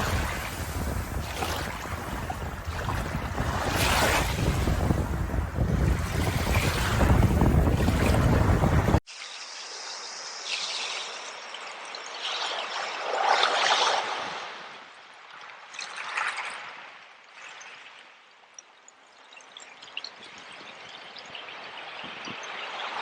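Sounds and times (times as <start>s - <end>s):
loud wind: 0.0s - 9.0s
surf: 0.0s - 9.0s
small stream trickling: 0.0s - 23.0s.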